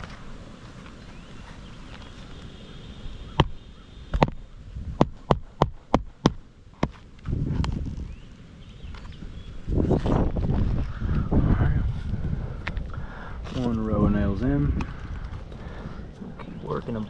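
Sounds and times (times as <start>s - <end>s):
hammer striking nails: 5.0s - 7.0s
low rumble: 7.2s - 17.0s.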